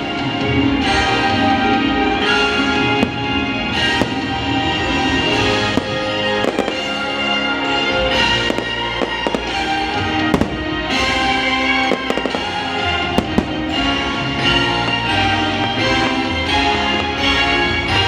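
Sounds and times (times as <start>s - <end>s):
orchestral music: 0.0s - 18.0s
fireworks bangs: 2.9s - 7.2s, 8.4s - 14.0s.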